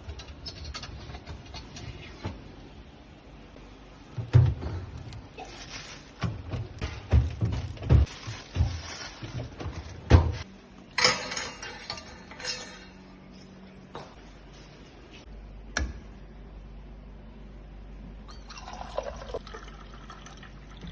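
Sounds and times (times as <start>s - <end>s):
dishes clinking and knocking: 11.0s - 12.9s.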